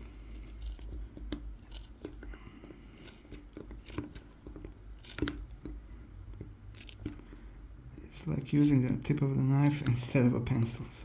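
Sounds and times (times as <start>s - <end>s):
knife scratching into wood: 0.0s - 5.6s, 6.7s - 7.3s.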